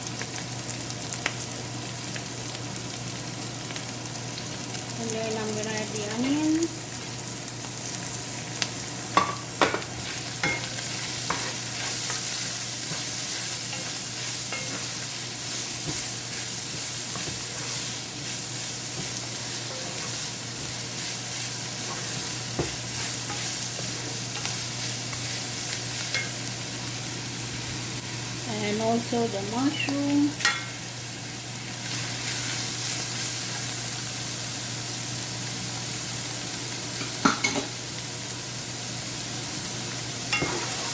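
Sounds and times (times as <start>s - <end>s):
vegetables sizzling in a pan: 0.0s - 40.9s
utensil scraping pan: 9.8s - 25.4s.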